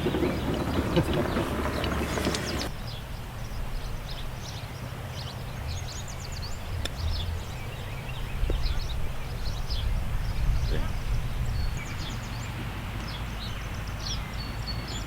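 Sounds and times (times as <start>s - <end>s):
low wind rumble on microphone: 0.0s - 15.0s
small birds chirping: 0.0s - 15.0s.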